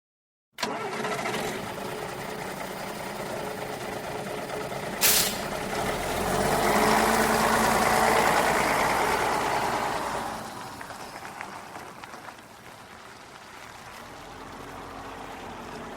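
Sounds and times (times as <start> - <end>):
bus engine running: 0.6 - 15.9
air brake hiss: 5.0 - 5.6.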